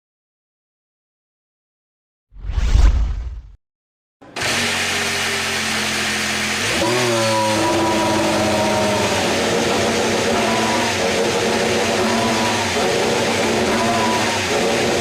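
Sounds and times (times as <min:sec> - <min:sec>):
racing car engine revving: 0:04.2 - 0:15.0.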